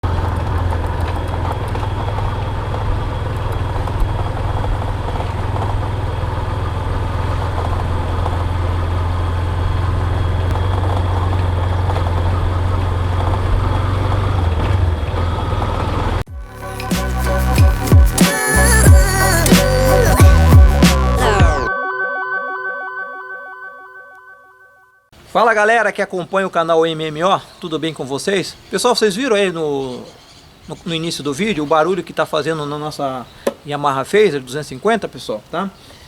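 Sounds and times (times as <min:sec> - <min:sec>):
motorcycle engine running: 0:00.0 - 0:16.5.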